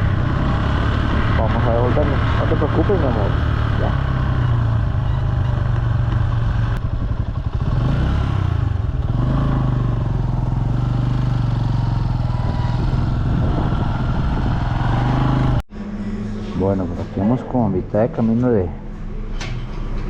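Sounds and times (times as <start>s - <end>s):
motorcycle engine running: 0.0s - 16.3s
wind noise: 12.2s - 15.3s.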